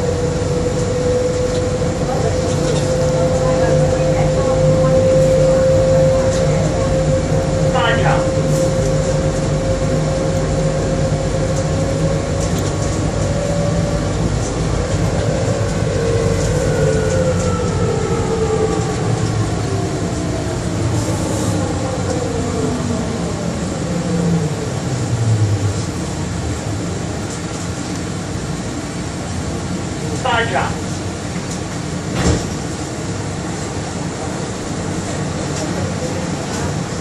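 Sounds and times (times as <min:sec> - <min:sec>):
train motor whine: 0:00.0 - 0:20.2.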